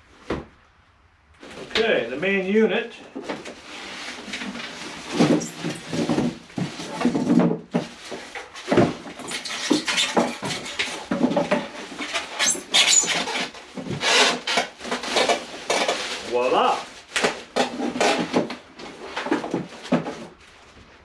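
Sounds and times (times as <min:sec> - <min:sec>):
packing material rustling: 0:04.8 - 0:06.9.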